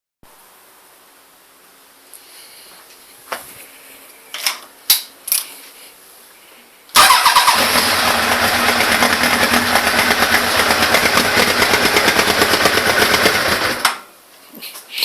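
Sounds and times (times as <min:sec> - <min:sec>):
motorcycle engine starting and running: 0:07.0 - 0:14.0.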